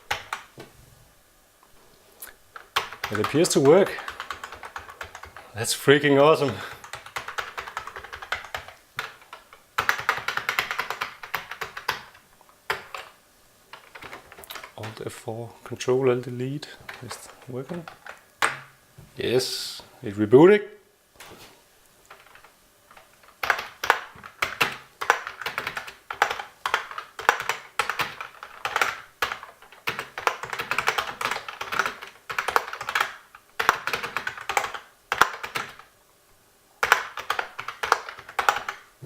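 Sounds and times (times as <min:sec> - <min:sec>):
fast typing on plastic keyboard: 0:00.0 - 0:00.5, 0:02.5 - 0:05.5, 0:06.4 - 0:15.0, 0:16.8 - 0:18.6, 0:22.1 - 0:35.9, 0:36.8 - 0:38.9.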